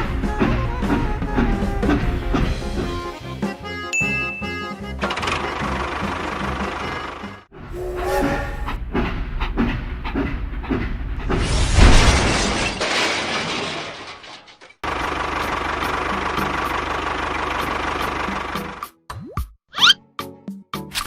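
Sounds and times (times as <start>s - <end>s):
rushing noise: 7.8s - 8.9s.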